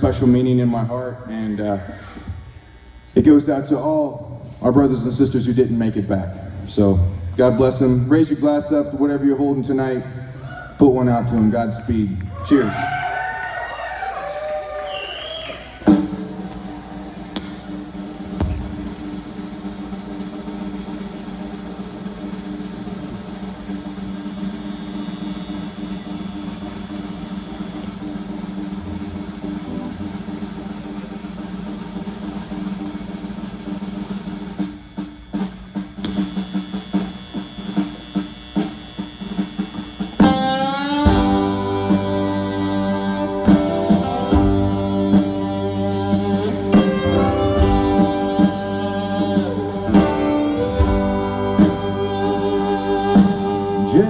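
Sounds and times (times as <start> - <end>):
live band with drums: 11.2 - 54.0
guitar picking: 22.5 - 31.3, 35.3 - 54.0.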